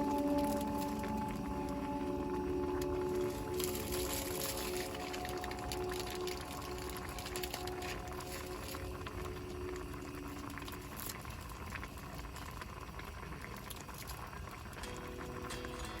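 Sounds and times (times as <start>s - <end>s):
quiet background music: 0.0s - 12.5s, 14.7s - 16.0s
food bubbling in a pot: 0.0s - 16.0s.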